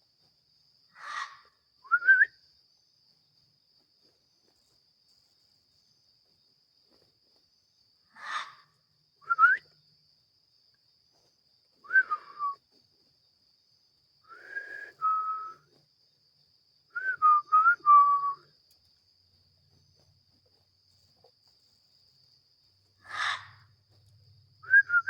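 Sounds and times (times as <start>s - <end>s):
short whistled calls: 1.8s - 2.5s, 9.2s - 9.8s, 11.8s - 12.6s, 14.2s - 15.7s, 16.9s - 18.5s, 24.6s - 25.0s.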